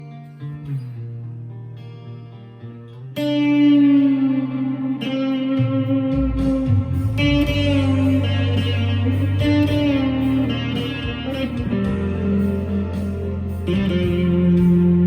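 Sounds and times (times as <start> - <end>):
electric guitar notes: 0.0 - 15.0.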